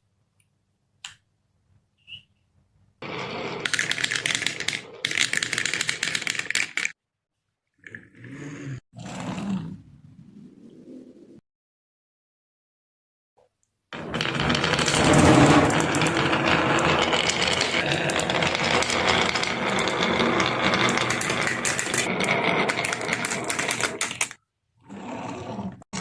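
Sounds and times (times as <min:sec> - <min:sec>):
marbles rolling down wooden track: 0:03.0 - 0:07.0, 0:14.0 - 0:24.4.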